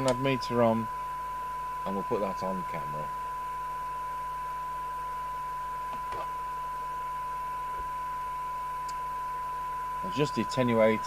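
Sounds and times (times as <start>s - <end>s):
steady test tone: 0.0s - 11.0s
radio background hiss: 10.0s - 11.0s.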